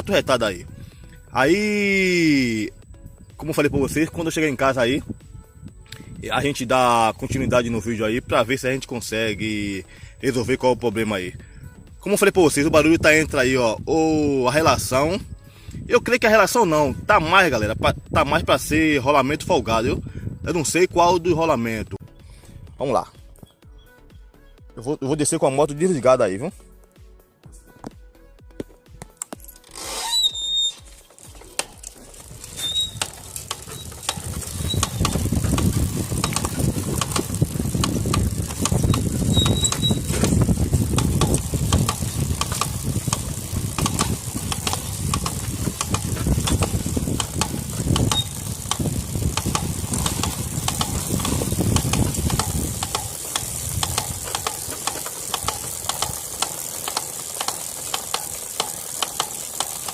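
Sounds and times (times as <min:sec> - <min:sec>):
wind and tyre road noise: 0:00.0 - 0:23.6, 0:29.0 - 0:59.9
rapid clicks: 0:29.2 - 0:59.9.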